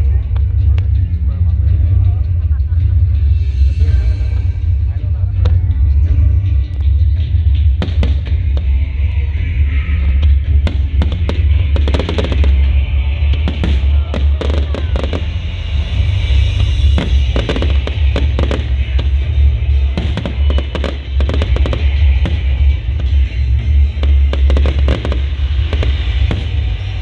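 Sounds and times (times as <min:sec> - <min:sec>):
deep booming rumble: 0:00.0 - 0:27.0
music playing: 0:00.0 - 0:27.0
fireworks cracking and popping: 0:07.8 - 0:08.8, 0:10.6 - 0:27.0.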